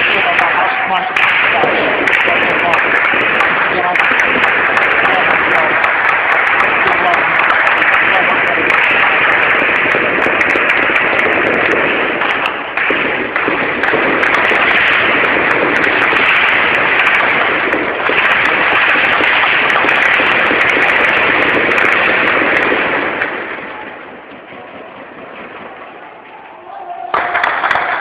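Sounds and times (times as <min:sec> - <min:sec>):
heavy rapid gunfire: 0:00.0 - 0:28.0.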